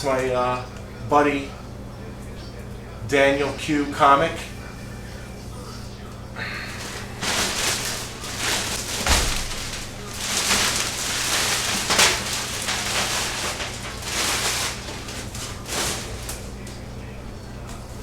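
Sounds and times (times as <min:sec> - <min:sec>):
plastic packing rustling: 0:06.5 - 0:18.0
soft thud: 0:07.2 - 0:10.8.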